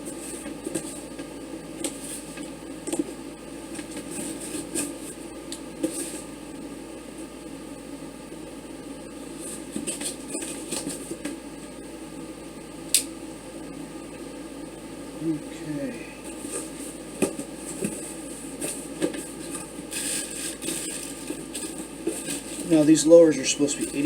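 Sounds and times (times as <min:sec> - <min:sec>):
steady background hum: 0:00.0 - 0:24.0
packaging rustling and scraping: 0:01.8 - 0:03.0, 0:03.7 - 0:05.2, 0:05.8 - 0:06.3, 0:09.3 - 0:11.3, 0:16.3 - 0:24.0.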